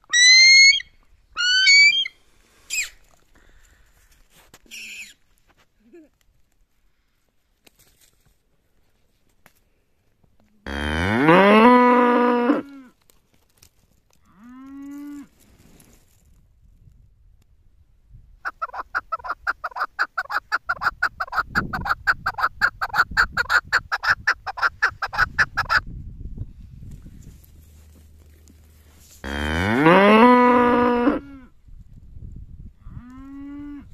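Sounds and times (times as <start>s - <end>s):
cow mooing: 10.7s - 12.8s, 29.2s - 31.5s.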